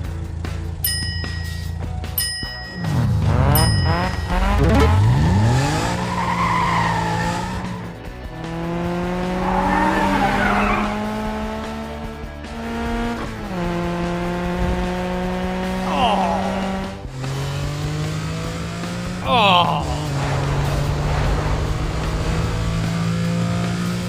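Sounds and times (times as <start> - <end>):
cartoon engines humming: 0.8 - 14.4, 15.5 - 23.4
tyre squeals: 5.0 - 7.8, 9.4 - 10.9.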